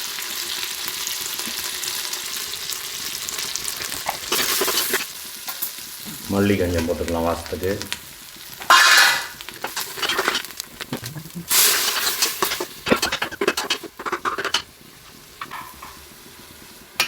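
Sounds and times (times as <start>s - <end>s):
sizzling: 0.0s - 17.0s
spoon scraping cooking pot: 4.0s - 5.1s, 8.6s - 16.0s.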